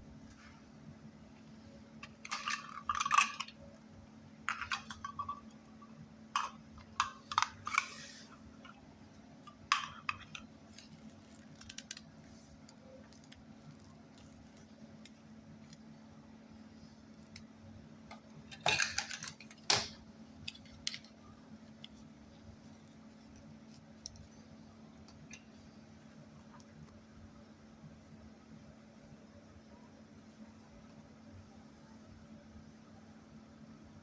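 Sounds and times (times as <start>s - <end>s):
faint steady hum: 0.0s - 34.0s
plastic toys clattering: 2.0s - 3.7s, 4.5s - 8.3s, 18.5s - 21.2s.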